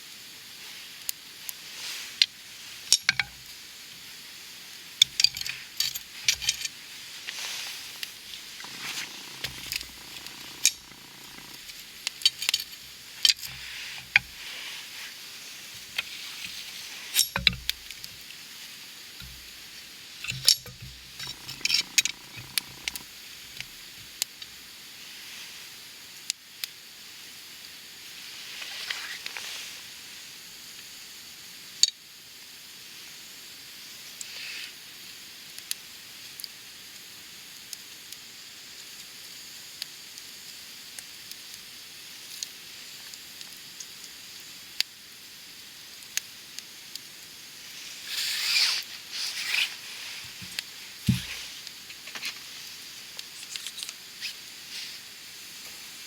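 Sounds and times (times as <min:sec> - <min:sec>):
campfire crackling and popping: 0:04.8 - 0:18.4, 0:19.2 - 0:24.6.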